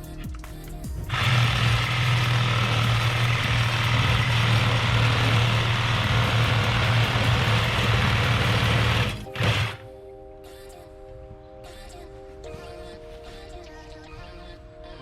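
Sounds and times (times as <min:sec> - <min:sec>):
power tool motor running: 0:01.1 - 0:09.9.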